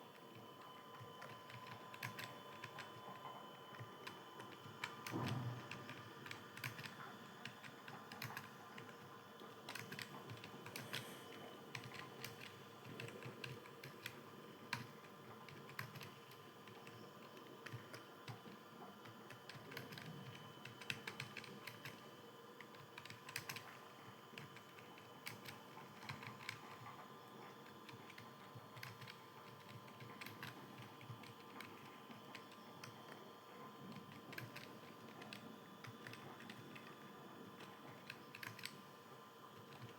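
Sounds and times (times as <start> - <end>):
steady low hum: 0.0 - 39.9
computer keyboard typing: 0.2 - 39.0, 39.6 - 39.9.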